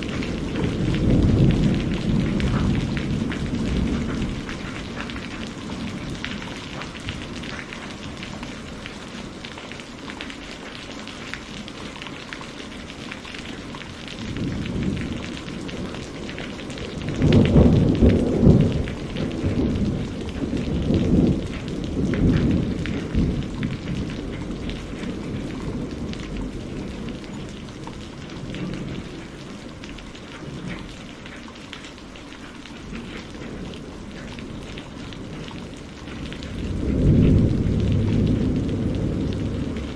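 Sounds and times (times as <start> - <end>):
thunder rumbling: 0.0 - 9.7, 11.1 - 31.3, 32.8 - 39.9
steady rain: 0.0 - 39.9.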